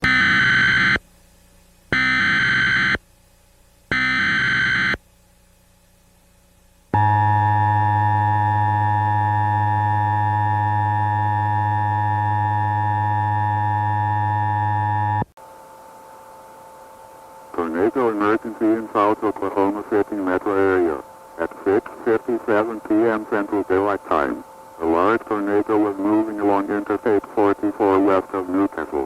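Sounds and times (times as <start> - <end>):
electronic attention tone buzz: 0.0 - 1.0, 1.9 - 3.0, 3.9 - 5.0, 6.9 - 29.0
digital data bursts: 17.6 - 29.0.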